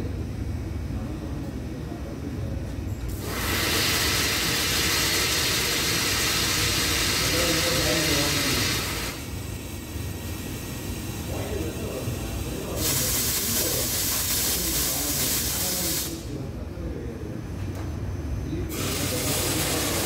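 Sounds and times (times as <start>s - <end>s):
low machine hum: 0.0s - 20.0s
espresso machine steam hiss: 3.1s - 16.3s, 18.7s - 20.0s.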